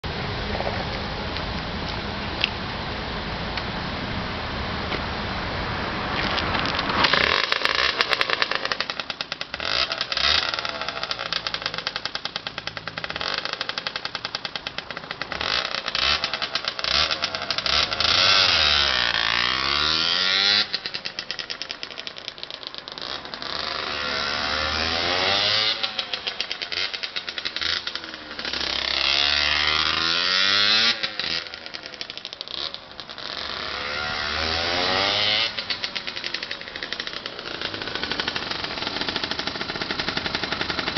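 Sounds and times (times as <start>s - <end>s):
two-stroke engine revving: 6.9s - 40.9s.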